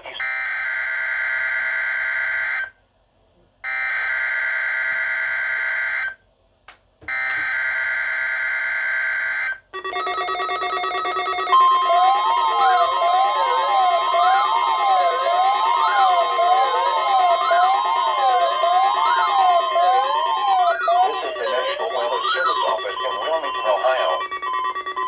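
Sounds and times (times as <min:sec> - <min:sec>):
loud steady tone: 0:09.8 - 0:25.0
screeching data tone bursts: 0:09.8 - 0:25.0
wavering electronic tones: 0:09.8 - 0:25.0.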